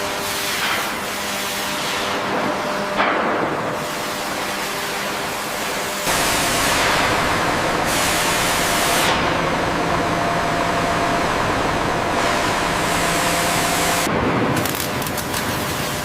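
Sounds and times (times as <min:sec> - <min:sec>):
steady mechanical hum: 0:00.0 - 0:16.0
long hissing blasts: 0:06.0 - 0:14.1.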